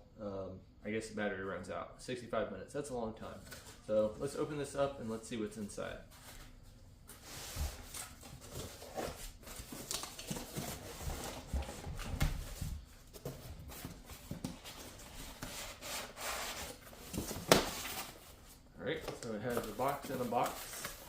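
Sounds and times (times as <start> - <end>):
cardboard box rustling: 7.5 - 18.6.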